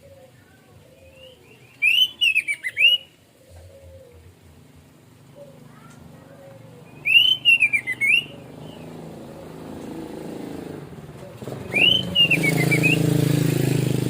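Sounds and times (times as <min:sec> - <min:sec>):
thrush singing whistled phrases: 0:01.2 - 0:03.2, 0:06.9 - 0:08.9, 0:11.4 - 0:13.4
vehicle engine humming: 0:03.2 - 0:14.0.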